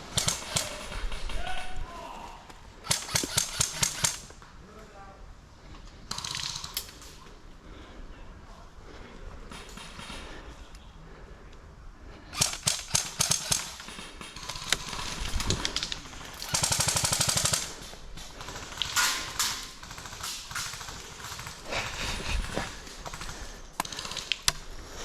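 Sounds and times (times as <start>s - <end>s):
airsoft guns firing: 0.0s - 1.8s, 2.8s - 4.3s, 6.1s - 7.0s, 12.3s - 24.6s.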